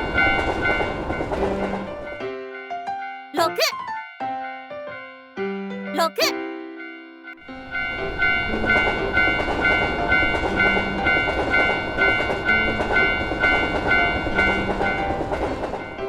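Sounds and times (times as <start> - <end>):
railroad crossing bell ringing: 6.8 - 16.0
passing train rumbling: 7.6 - 16.0.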